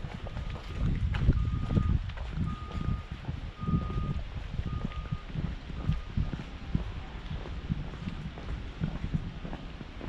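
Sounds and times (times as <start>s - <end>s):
wind buffeting microphone: 0.0s - 10.0s
faint high beeps: 1.3s - 6.3s.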